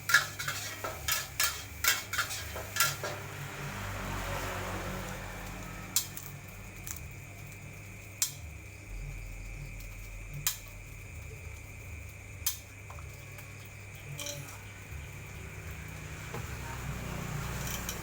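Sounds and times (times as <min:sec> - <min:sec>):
metal clinks of cooking utensils: 0:00.0 - 0:03.2, 0:14.1 - 0:14.6, 0:17.5 - 0:18.0
steady low hum: 0:05.1 - 0:18.0.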